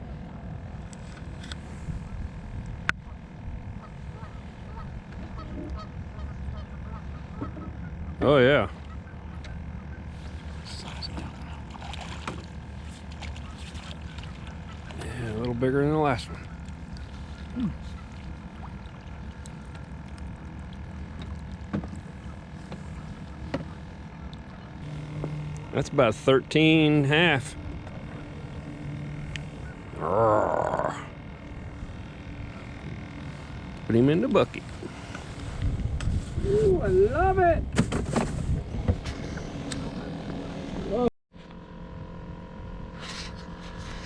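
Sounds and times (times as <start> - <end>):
steady low rumble: 0.0 - 44.0
geese honking faintly: 3.0 - 11.8, 12.8 - 21.2, 22.0 - 30.2, 31.0 - 35.6.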